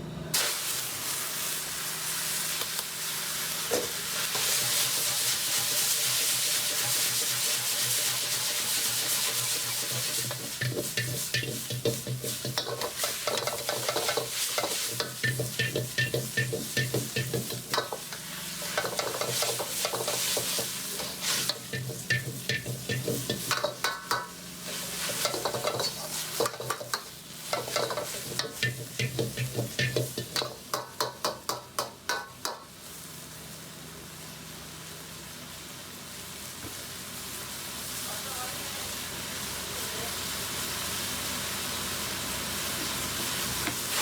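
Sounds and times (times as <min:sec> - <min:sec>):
food sizzling in a wok: 0:00.3 - 0:44.0
utensil scraping and clanking wok: 0:03.1 - 0:33.0.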